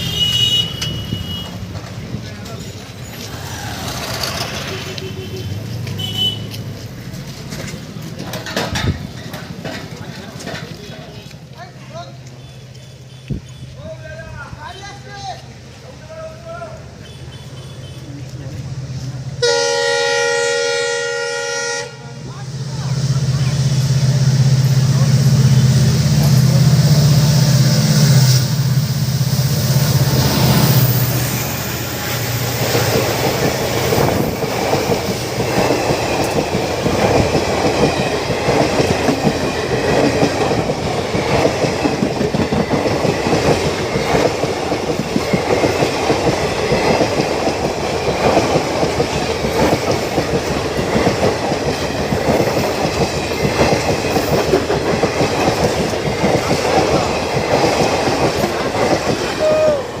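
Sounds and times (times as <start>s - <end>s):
train wheels clattering over rails: 0.0s - 13.6s, 22.6s - 60.0s.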